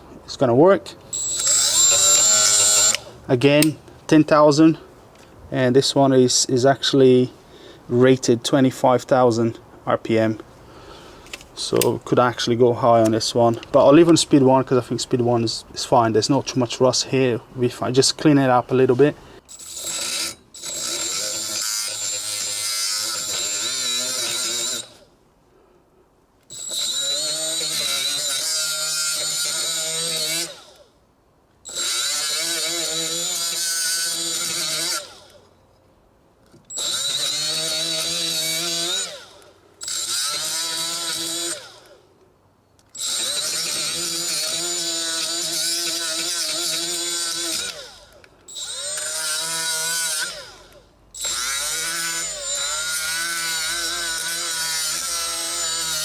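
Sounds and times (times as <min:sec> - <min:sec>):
die grinder motor whine: 0:01.1 - 0:03.2, 0:19.5 - 0:25.0, 0:26.5 - 0:30.8, 0:31.7 - 0:35.4, 0:36.7 - 0:42.0, 0:43.0 - 0:56.0.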